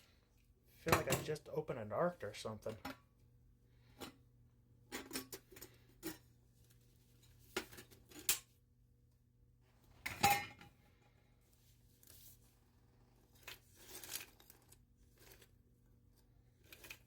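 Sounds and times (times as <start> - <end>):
metal can clinks and knocks: 10.1 - 10.7.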